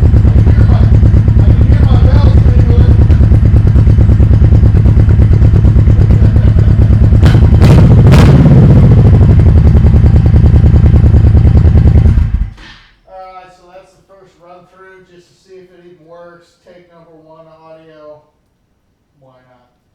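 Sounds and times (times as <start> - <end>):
motorcycle engine idling: 0.0 - 12.6.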